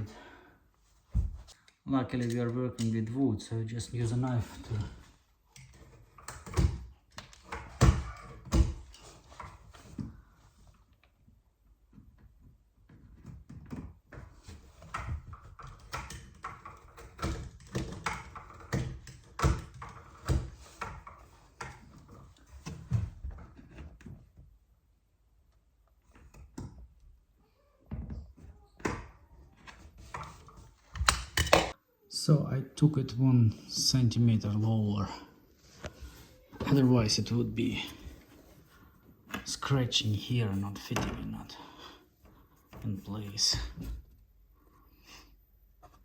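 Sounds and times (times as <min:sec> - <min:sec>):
wood knocks and clunks: 0:01.1 - 0:01.5, 0:04.5 - 0:10.2.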